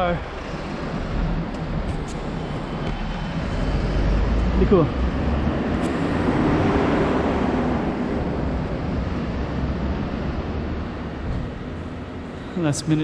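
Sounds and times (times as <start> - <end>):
wind rumbling on microphone: 0.0 - 12.4
vehicle traffic: 0.0 - 13.0.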